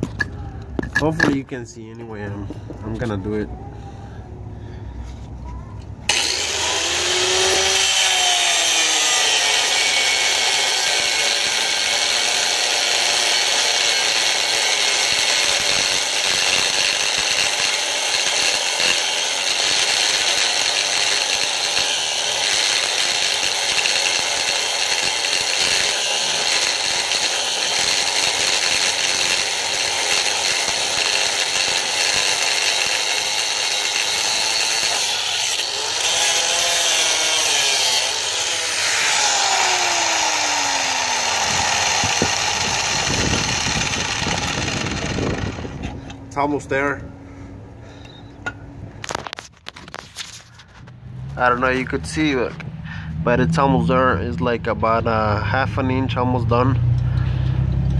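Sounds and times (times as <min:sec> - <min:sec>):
angle grinder cutting steel: 0:06.1 - 0:46.5.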